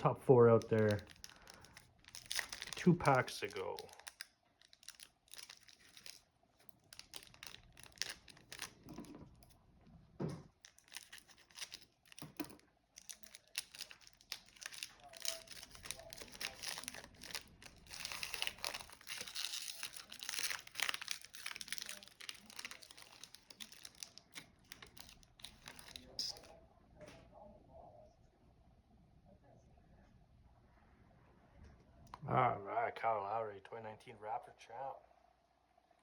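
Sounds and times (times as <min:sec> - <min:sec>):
plastic wrapper crinkling and tearing: 0:00.4 - 0:09.6, 0:10.5 - 0:26.5.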